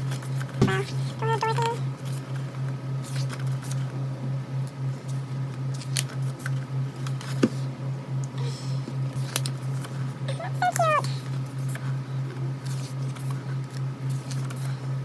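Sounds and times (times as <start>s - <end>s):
pages turning and rustling: 3.0s - 3.8s, 12.6s - 14.7s.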